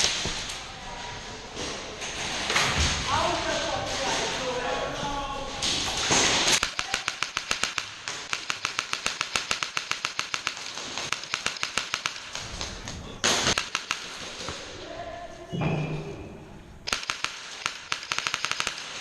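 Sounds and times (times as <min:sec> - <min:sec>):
airsoft rifle full auto fire: 0:06.6 - 0:12.4, 0:13.4 - 0:14.4, 0:16.9 - 0:19.0.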